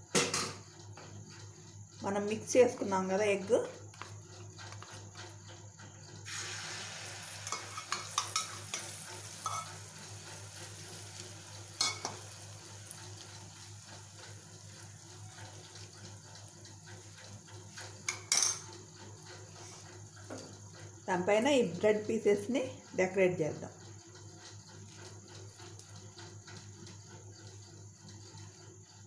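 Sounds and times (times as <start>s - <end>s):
egg sizzling in a pan: 6.2s - 21.4s, 24.1s - 28.6s
utensil clicking against pan: 7.4s - 9.8s, 11.8s - 12.4s, 15.1s - 20.9s.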